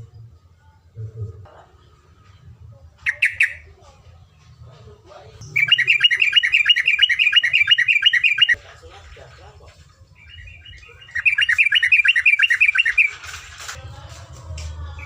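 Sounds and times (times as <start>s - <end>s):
bird singing rapid notes: 3.0s - 3.7s, 5.4s - 8.6s, 10.2s - 13.2s.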